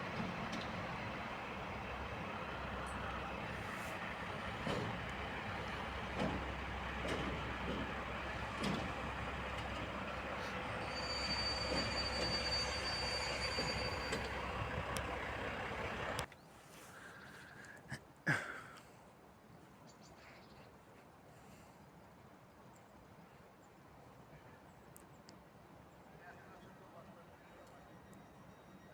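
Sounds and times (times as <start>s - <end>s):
train rumbling past: 0.0s - 16.3s
high-pitched wheel squeal: 10.4s - 14.8s.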